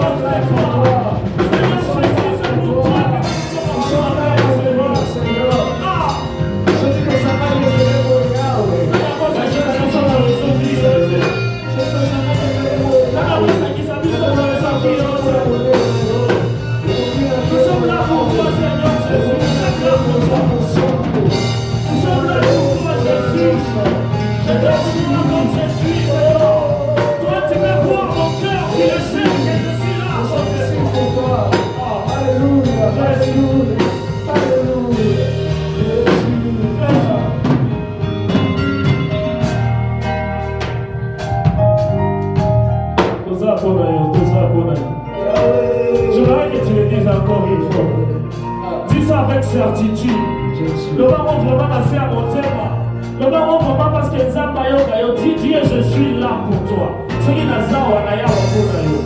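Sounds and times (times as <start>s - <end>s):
church band playing: 0.0s - 59.0s
people singing: 45.2s - 46.9s.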